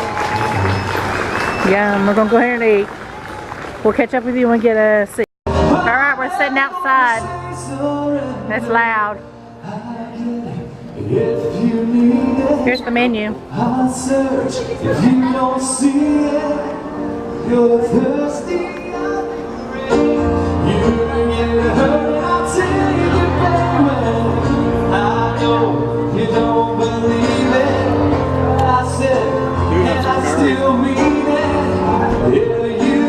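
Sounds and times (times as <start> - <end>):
live band playing: 0.0 - 4.0, 5.5 - 33.0
person singing: 9.6 - 33.0
bass guitar: 19.8 - 33.0.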